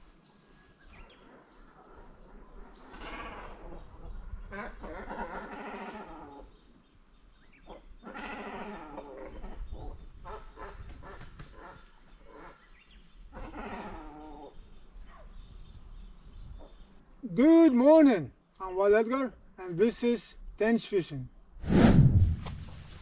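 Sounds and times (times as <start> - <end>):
quavering animal calls: 1.0 - 6.8, 7.5 - 15.4.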